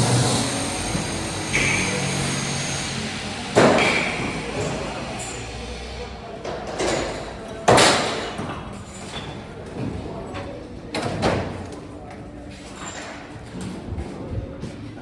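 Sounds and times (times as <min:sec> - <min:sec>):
construction banging: 0:00.0 - 0:05.8.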